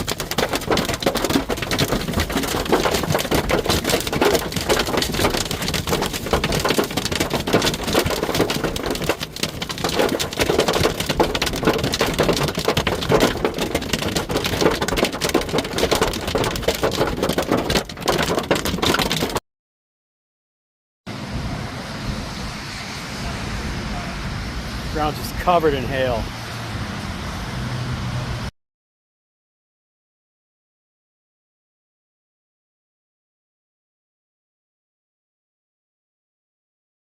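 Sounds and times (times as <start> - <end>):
hail and rain on metal: 0.0 - 19.4.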